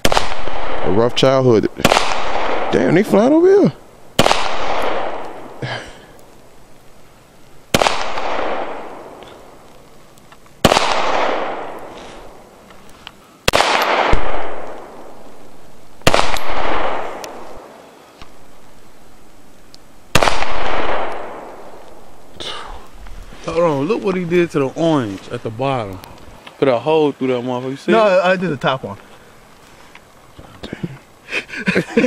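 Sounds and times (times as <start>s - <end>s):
gunshots with echo: 0.0s - 3.0s, 4.2s - 5.6s, 7.7s - 9.2s, 10.6s - 12.0s, 13.5s - 15.0s, 16.0s - 17.5s, 20.1s - 21.8s.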